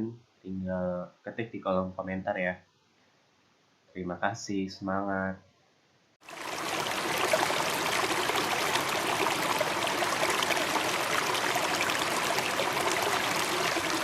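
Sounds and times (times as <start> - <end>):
flowing water rushing: 6.2 - 14.0.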